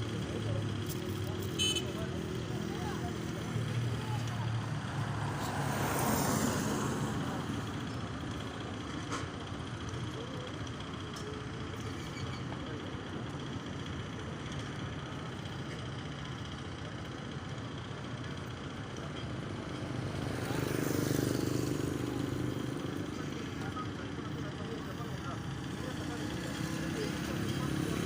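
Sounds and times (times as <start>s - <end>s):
vehicle running rumble: 0.0s - 28.0s.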